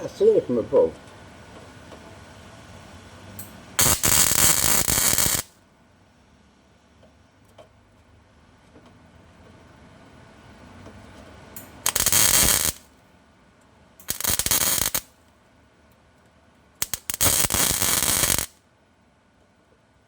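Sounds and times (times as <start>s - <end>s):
welding arc crackling: 3.8s - 5.6s, 11.6s - 12.9s, 14.0s - 15.2s, 16.8s - 18.6s.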